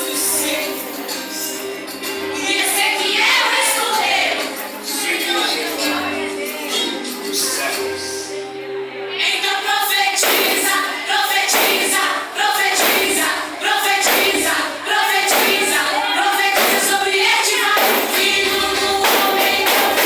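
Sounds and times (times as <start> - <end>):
group of voices singing: 0.0 - 20.0
backing instruments: 10.2 - 20.0
regular percussive beat: 10.2 - 20.0.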